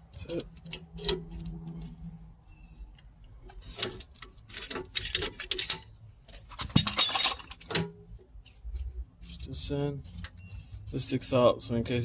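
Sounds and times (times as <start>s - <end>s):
metal tools clinking: 3.6s - 7.9s.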